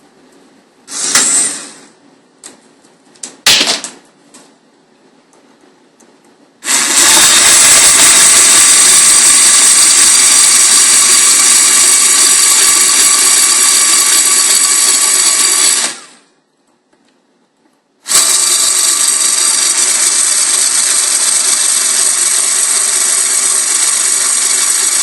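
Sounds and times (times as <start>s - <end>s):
electric screwdriver running: 0.9s - 1.8s, 6.6s - 16.2s, 18.1s - 25.0s.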